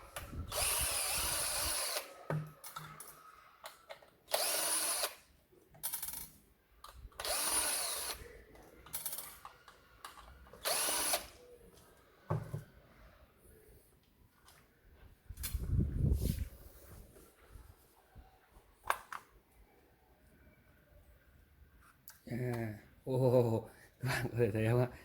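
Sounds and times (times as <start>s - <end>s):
cordless drill bursts: 0.0s - 2.3s, 4.3s - 5.3s, 7.2s - 8.3s, 10.6s - 11.4s.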